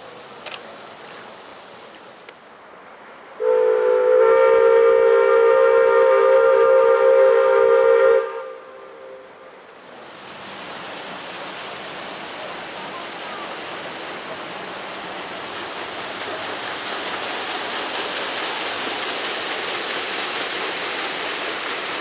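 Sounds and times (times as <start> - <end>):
ship's steam whistle blast: 3.4 - 9.4.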